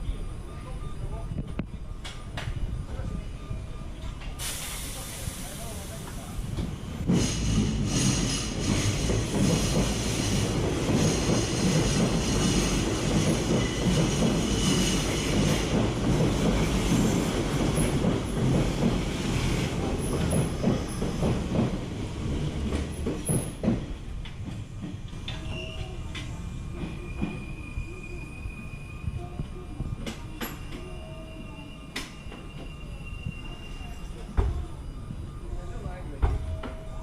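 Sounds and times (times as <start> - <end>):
high wheel squeal: 30.4 - 35.0.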